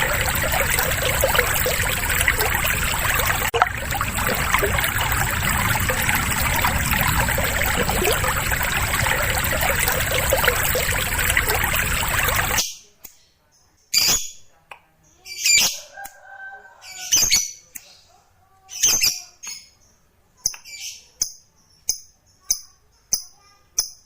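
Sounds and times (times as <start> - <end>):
water trickling and splashing: 0.0 - 12.6.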